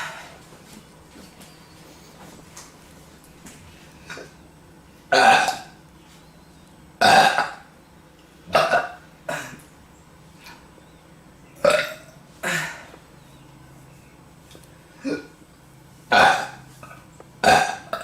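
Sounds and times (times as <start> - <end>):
woman burping: 5.1 - 5.8, 7.0 - 7.7, 8.5 - 9.6, 11.6 - 12.9, 15.0 - 15.4, 16.1 - 16.6, 17.4 - 18.0.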